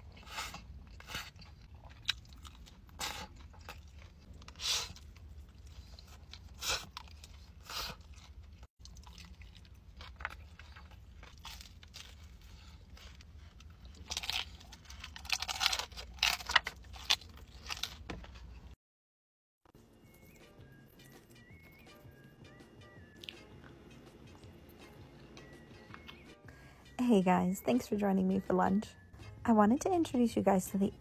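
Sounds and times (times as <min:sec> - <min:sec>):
crunchy food being chewed: 0:00.0 - 0:18.8, 0:23.1 - 0:26.4.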